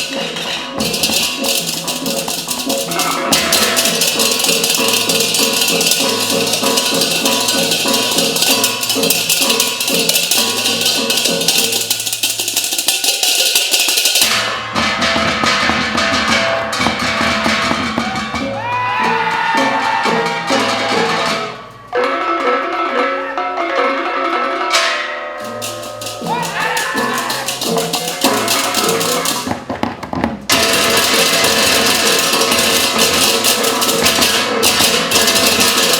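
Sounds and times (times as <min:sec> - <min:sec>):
steady drum pattern: 0:00.0 - 0:21.9, 0:25.6 - 0:35.9
gamelan ensemble music: 0:00.0 - 0:29.6, 0:30.5 - 0:35.9
struck metal keys and gongs: 0:24.7 - 0:29.5.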